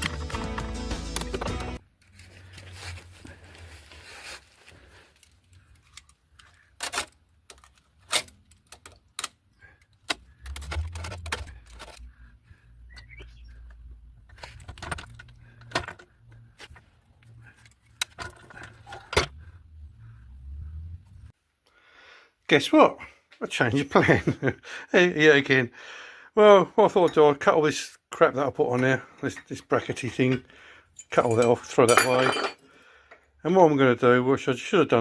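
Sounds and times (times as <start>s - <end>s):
metal tools clinking: 31.0s - 32.7s.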